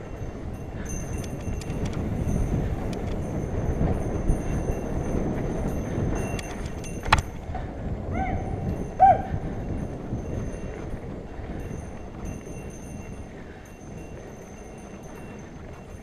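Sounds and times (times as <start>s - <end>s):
bike tyres rumbling on dirt: 0.0s - 16.0s
bike rattling clicks: 0.1s - 16.0s.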